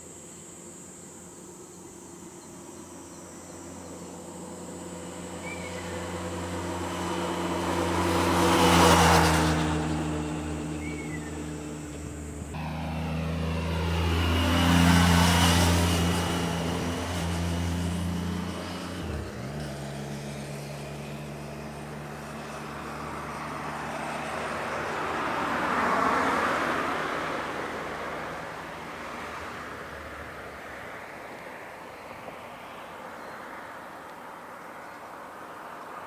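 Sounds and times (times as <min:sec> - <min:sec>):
steady engine hum: 0:00.0 - 0:31.2
road vehicles passing by: 0:00.0 - 0:36.0.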